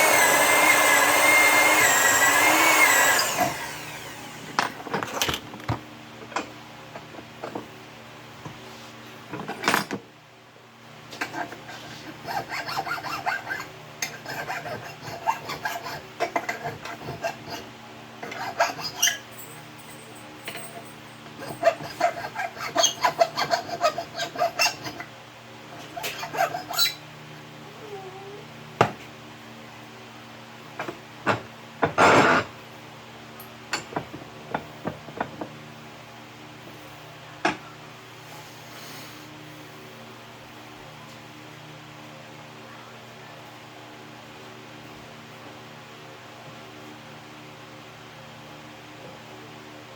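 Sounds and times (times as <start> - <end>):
hand file rasping: 0.0 - 4.3, 11.3 - 19.2, 21.4 - 25.1, 25.8 - 27.0.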